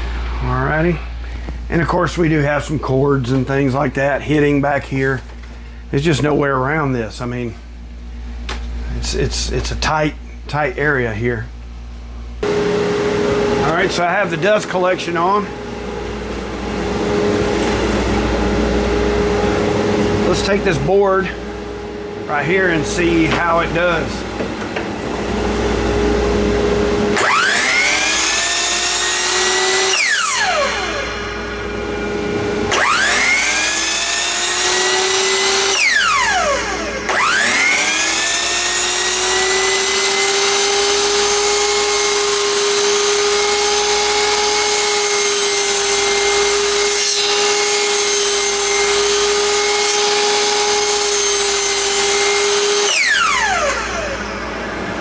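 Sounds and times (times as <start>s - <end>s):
dust collector hum: 0.0s - 55.0s
miter saw motor whining: 12.4s - 55.0s.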